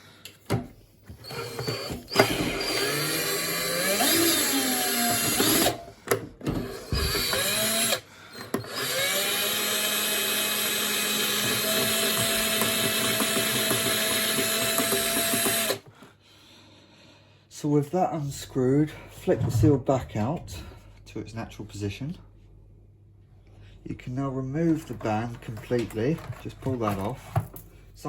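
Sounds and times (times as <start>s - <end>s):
cordless drill running: 1.2s - 5.8s, 6.5s - 15.9s.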